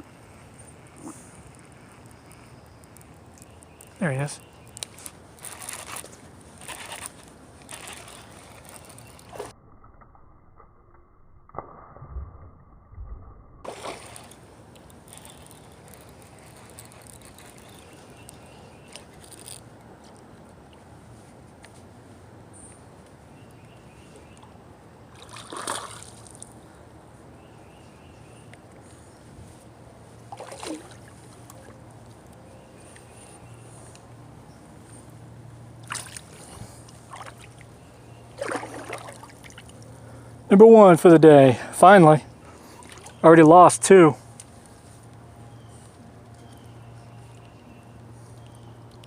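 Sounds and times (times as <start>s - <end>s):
creek water trickling: 0.0s - 9.5s, 13.6s - 21.0s, 23.4s - 28.5s, 29.7s - 45.3s
fish splashing: 13.7s - 17.9s, 25.1s - 26.6s, 30.3s - 31.6s, 35.8s - 39.9s.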